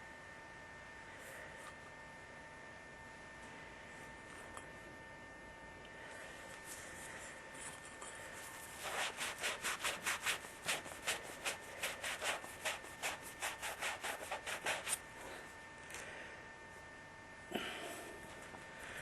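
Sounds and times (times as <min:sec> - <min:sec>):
emery cloth rubbing copper pipe: 0:06.6 - 0:15.0.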